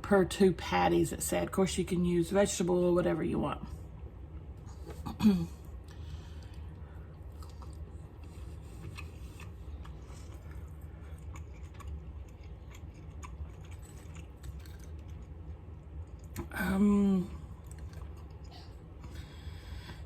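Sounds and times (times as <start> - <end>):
steady low hum: 0.0 - 20.0
person chewing: 4.7 - 16.5, 17.4 - 19.3.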